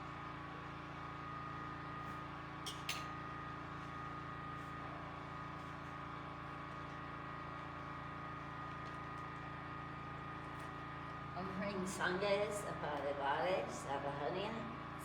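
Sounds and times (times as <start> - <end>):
power generator humming: 3.2 - 15.0.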